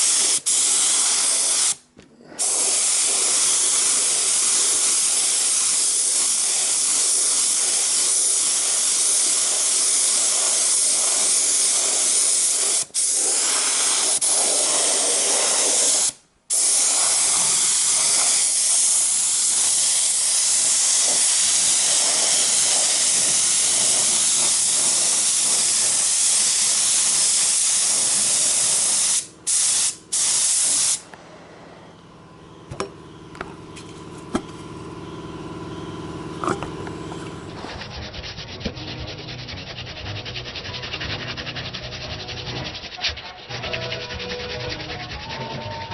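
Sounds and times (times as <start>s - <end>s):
paint spray gun hissing: 0.0s - 1.8s, 2.4s - 31.1s.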